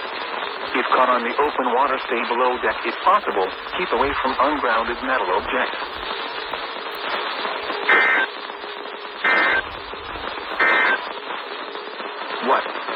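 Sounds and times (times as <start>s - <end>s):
radio receiver hiss: 0.0s - 12.9s
warbling digital data tones: 3.4s - 12.8s.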